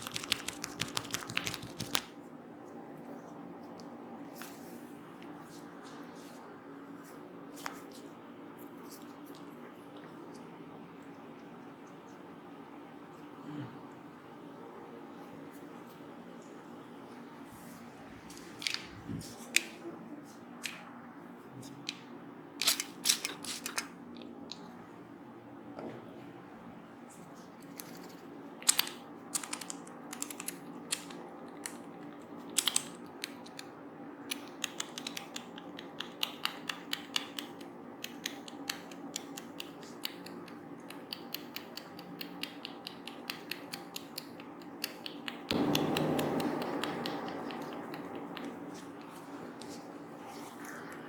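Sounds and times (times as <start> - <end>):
fingers crackling through wet hair: 0.0 - 2.1.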